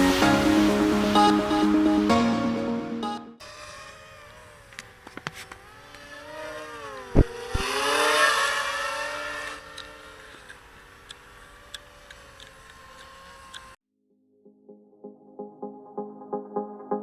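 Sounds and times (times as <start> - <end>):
rush of hissing noise: 0.0 - 1.8
quadcopter motors whining: 3.4 - 13.8.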